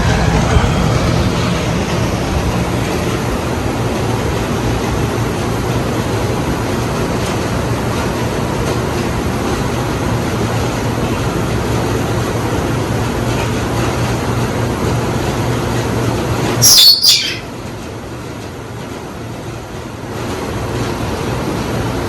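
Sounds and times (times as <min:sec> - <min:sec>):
ceiling fan whoosh and hum: 0:00.0 - 0:22.0
sharp high chirps: 0:16.6 - 0:17.5.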